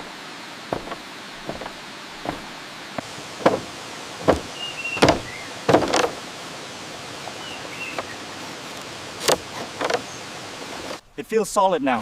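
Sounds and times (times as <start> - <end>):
bamboo poles knocking together: 0.7 - 6.2, 8.8 - 10.1.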